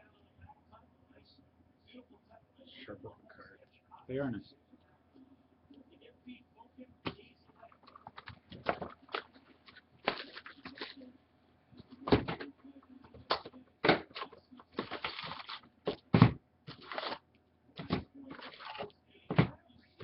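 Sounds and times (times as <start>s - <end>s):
foil wrapper crinkling: 7.9s - 11.0s, 14.2s - 15.7s, 16.7s - 17.2s, 18.3s - 18.9s.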